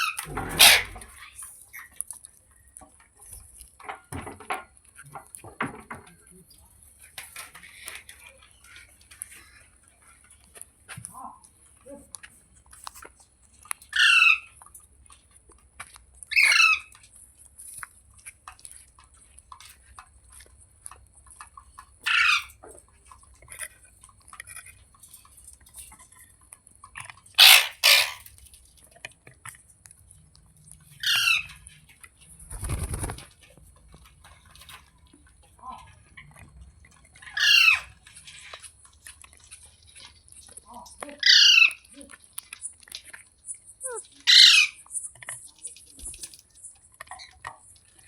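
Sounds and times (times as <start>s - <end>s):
parrot screeching: 0.0s - 1.1s, 13.9s - 14.5s, 16.3s - 16.9s, 22.1s - 22.5s, 27.4s - 28.3s, 31.0s - 31.6s, 37.4s - 37.9s, 41.2s - 41.8s, 44.2s - 44.8s
rustling: 32.2s - 33.7s.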